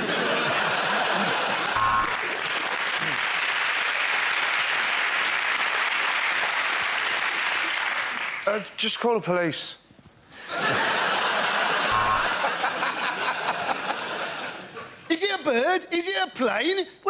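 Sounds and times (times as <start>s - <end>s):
studio audience laughing: 0.0s - 3.6s, 10.4s - 15.1s
audience clapping: 0.0s - 8.7s.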